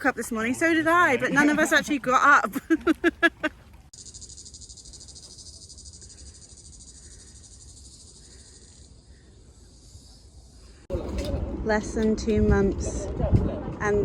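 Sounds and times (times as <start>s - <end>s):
insects trilling: 4.0s - 10.9s.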